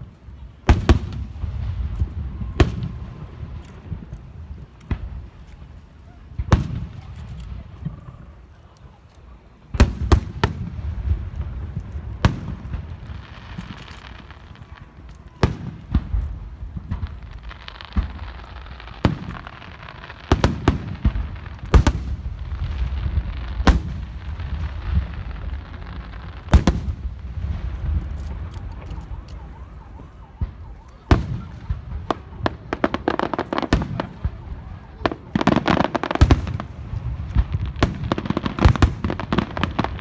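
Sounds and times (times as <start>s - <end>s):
firework shells bursting: 11.2s - 40.0s.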